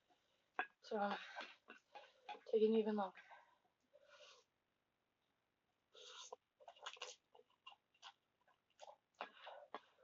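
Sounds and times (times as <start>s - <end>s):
noodle slurp: 5.9s - 10.0s
wet chewing mouth clicks: 6.0s - 10.0s.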